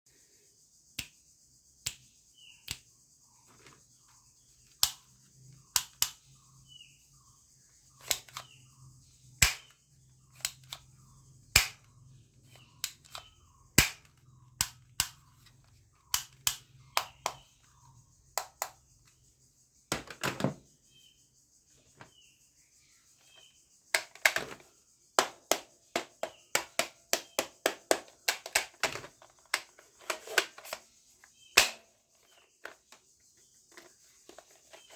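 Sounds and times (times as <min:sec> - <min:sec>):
toy guns firing: 0:13.8 - 0:14.1, 0:31.6 - 0:31.9.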